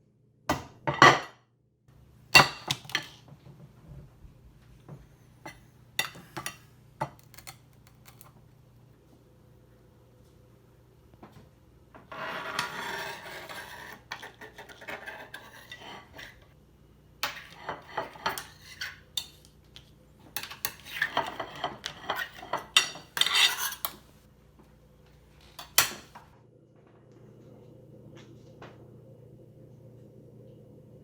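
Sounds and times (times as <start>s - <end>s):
metal spoon scraping crab shells: 5.5s - 8.3s, 12.4s - 16.4s, 17.2s - 19.5s, 20.3s - 24.1s.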